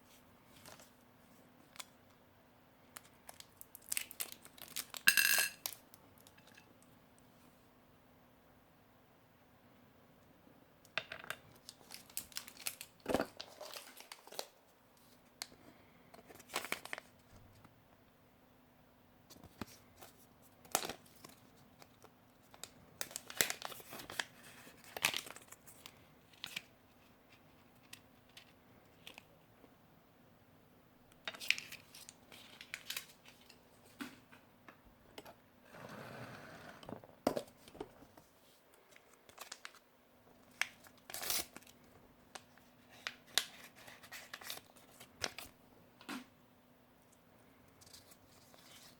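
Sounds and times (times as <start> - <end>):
faint steady hum: 0.0 - 48.9
packaging crinkling and tearing: 3.2 - 5.8, 11.6 - 14.6, 16.3 - 17.1, 20.7 - 26.7, 31.4 - 33.6, 39.0 - 39.8, 40.4 - 45.5.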